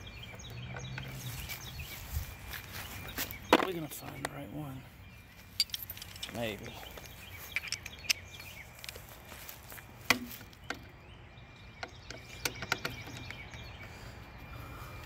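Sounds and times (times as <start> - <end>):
hand tools clicking and knocking: 5.5 - 8.3, 11.8 - 13.7.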